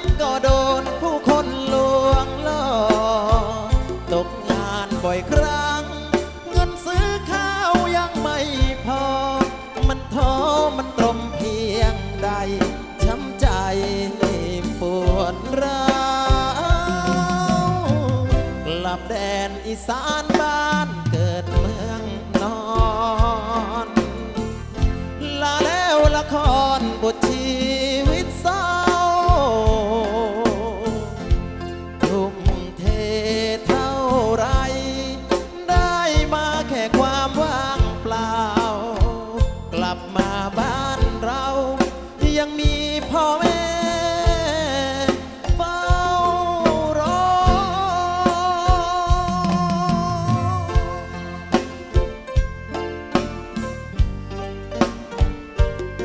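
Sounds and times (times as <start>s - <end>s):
sliding lead melody with vibrato: 0.0s - 56.0s
steady drum beat: 0.0s - 56.0s.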